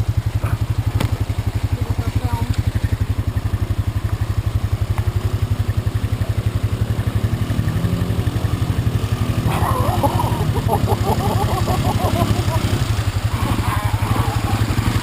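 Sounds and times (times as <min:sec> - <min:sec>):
vehicle engine throbbing: 0:00.0 - 0:15.0.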